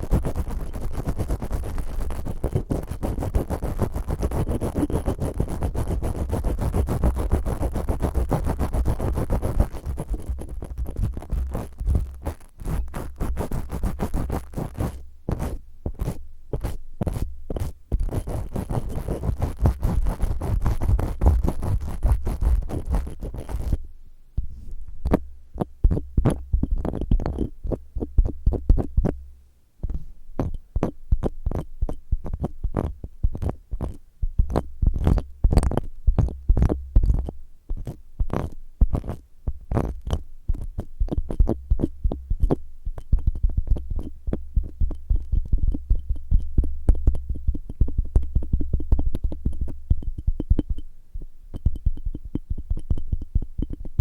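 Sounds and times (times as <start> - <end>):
scratching on microphone: 0.0 - 23.8, 24.4 - 54.0.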